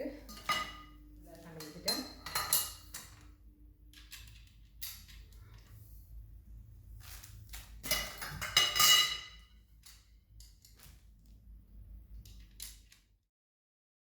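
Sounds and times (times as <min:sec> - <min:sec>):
metal parts clinking: 0:03.9 - 0:05.7.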